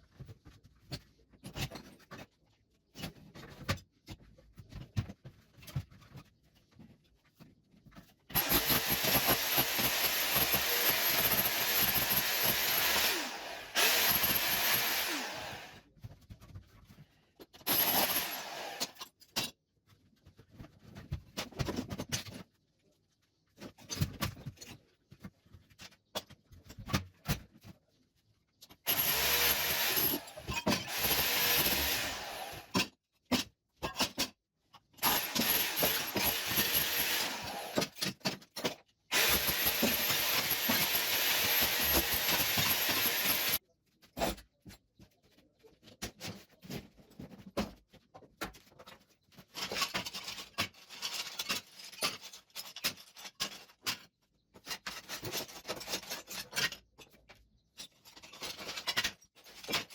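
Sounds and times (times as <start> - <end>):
power tool motor whine: 8.4 - 15.8, 17.7 - 19.0, 28.9 - 32.7, 35.0 - 37.8, 39.1 - 43.6.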